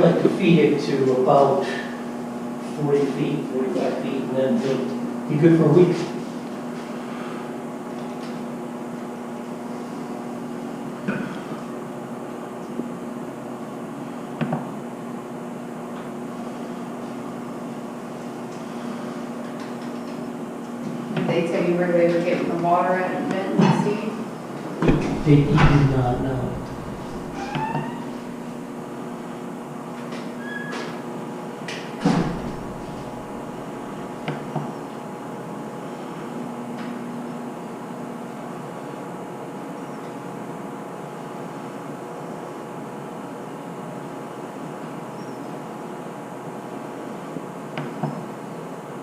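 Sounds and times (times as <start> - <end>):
steady low hum: 0.0 - 30.1, 31.1 - 36.5
machine hum: 24.2 - 30.0, 31.2 - 36.0
heavy thump: 24.8 - 27.5, 32.0 - 33.2
knocks and clicks: 24.9 - 27.8.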